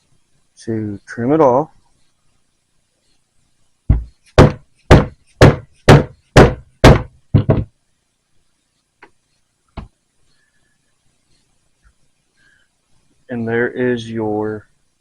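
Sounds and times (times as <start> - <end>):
hammer striking a punch: 3.9 - 7.7.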